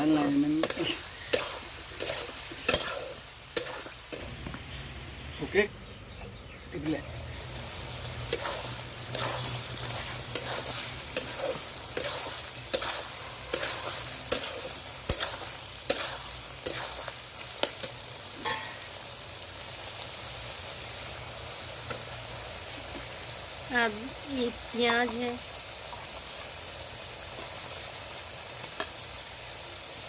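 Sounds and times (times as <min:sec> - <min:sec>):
spoon scraping a pan: 0:00.0 - 0:04.3, 0:08.2 - 0:18.9
food sizzling in a pan: 0:00.0 - 0:05.6, 0:06.8 - 0:30.0.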